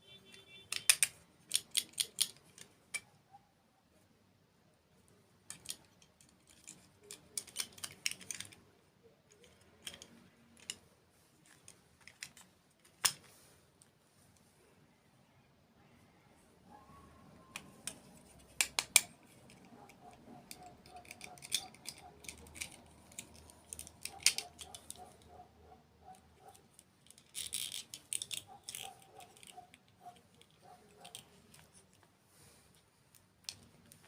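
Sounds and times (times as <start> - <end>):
soft rhythmic chewing: 19.3 - 27.0, 28.4 - 34.0.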